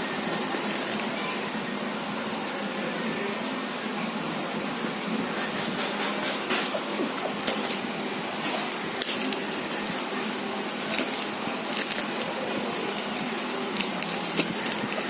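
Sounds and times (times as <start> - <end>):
packaging rustling: 7.2 - 15.0.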